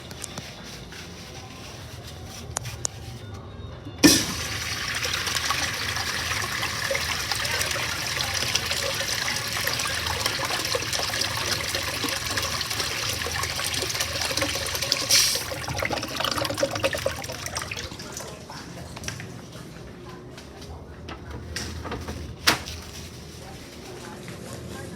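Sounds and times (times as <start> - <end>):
urinals flushing: 4.0 - 19.6.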